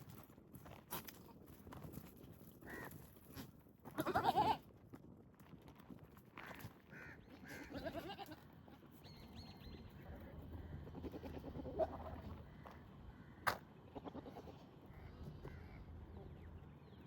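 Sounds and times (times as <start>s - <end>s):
goat bleating: 4.0s - 4.6s, 7.4s - 8.9s, 10.8s - 12.3s, 13.9s - 14.6s.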